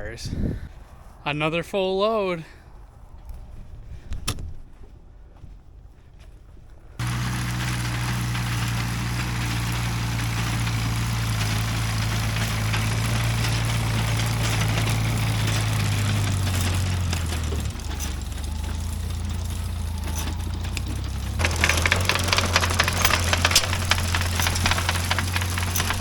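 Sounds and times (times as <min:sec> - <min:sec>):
tractor engine running: 0:07.0 - 0:26.0.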